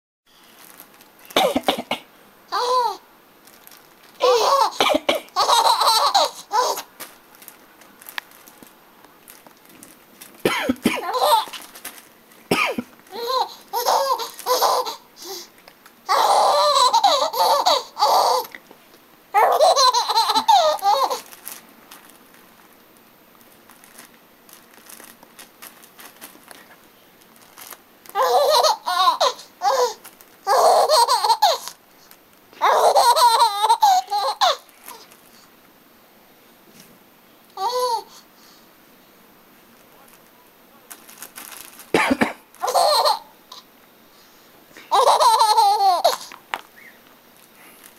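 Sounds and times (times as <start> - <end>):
baby laughing: 2.5 - 3.0, 4.2 - 7.0, 10.8 - 11.7, 13.1 - 15.5, 16.1 - 18.5, 19.4 - 21.3, 28.1 - 31.8, 32.6 - 35.0, 37.6 - 38.1, 42.6 - 43.6, 44.9 - 46.3.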